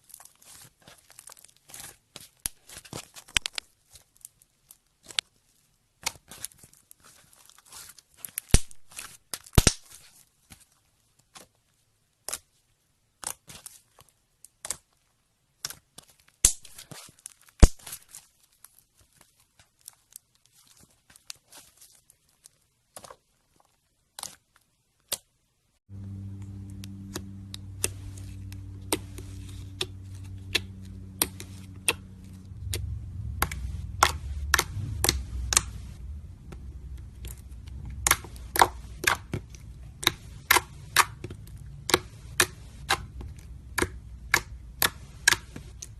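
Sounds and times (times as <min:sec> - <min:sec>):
steady low hum: 0:25.9 - 0:45.9
slime squished by hand: 0:26.8 - 0:45.9.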